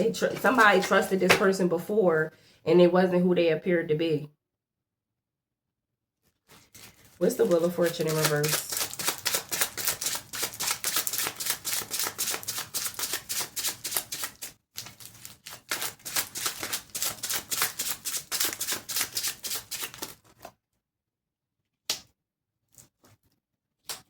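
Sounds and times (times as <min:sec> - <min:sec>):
cards being shuffled by hand: 0:00.2 - 0:01.5, 0:06.3 - 0:20.5.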